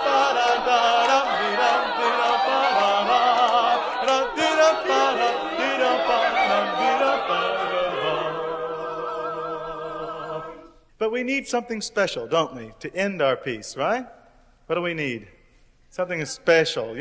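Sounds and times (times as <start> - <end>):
group singing a cappella: 0.0 - 10.8.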